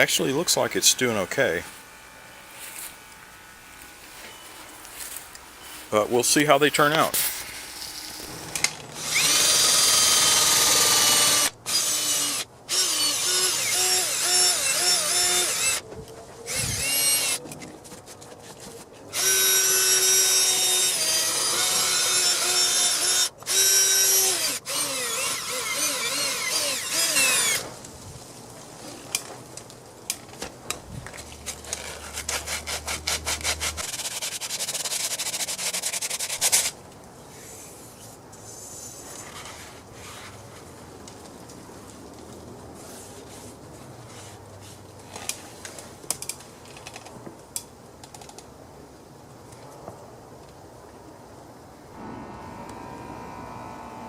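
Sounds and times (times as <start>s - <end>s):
handheld power tool whining: 6.9s - 15.8s, 16.5s - 17.4s, 19.1s - 27.7s, 52.0s - 54.0s.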